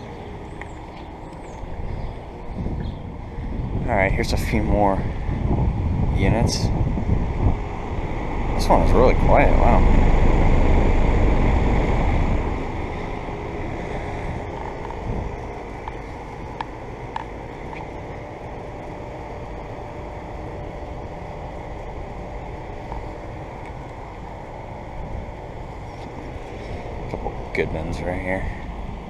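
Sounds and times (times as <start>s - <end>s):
air conditioner unit humming: 0.0s - 29.0s
wind buffeting microphone: 0.0s - 29.0s.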